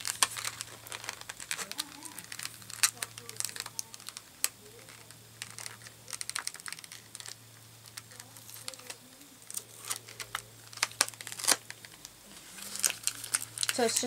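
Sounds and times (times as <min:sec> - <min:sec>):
packaging crinkling: 0:00.0 - 0:14.0.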